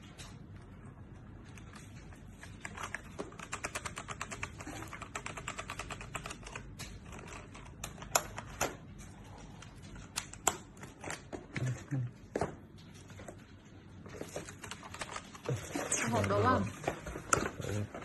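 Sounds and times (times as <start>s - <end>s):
mechanical keyboard typing: 2.4s - 8.8s, 14.5s - 15.4s.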